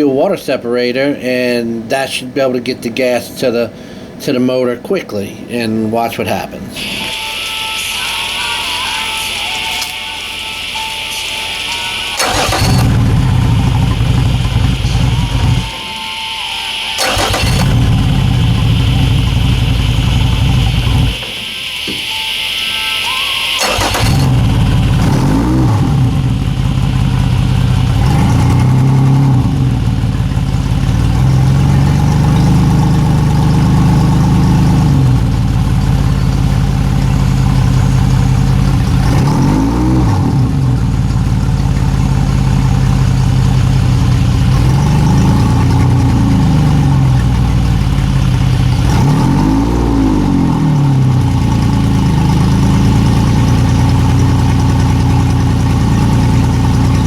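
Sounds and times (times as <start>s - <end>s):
outboard motor revving: 12.2s - 15.7s, 17.0s - 21.3s, 23.6s - 57.0s.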